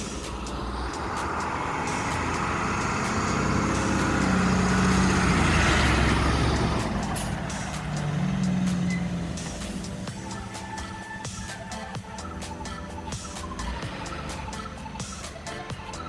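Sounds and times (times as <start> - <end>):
motor vehicle passing by: 0.0 - 10.2.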